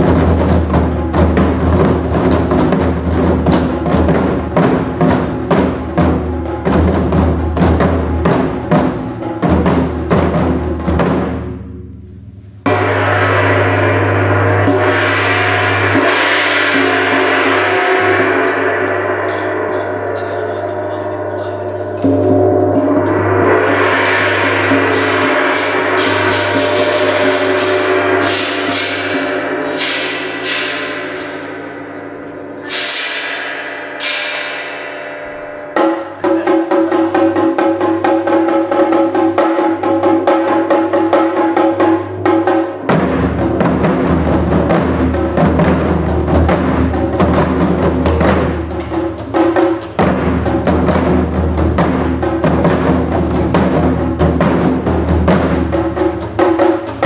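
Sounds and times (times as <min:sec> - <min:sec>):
fast even drum rhythm: 0:00.0 - 0:11.7, 0:12.7 - 0:34.7, 0:35.3 - 0:57.0
instrumental drum music: 0:00.0 - 0:57.0
gong-like swells: 0:12.6 - 0:36.9
ringing metallic hits: 0:12.6 - 0:45.2.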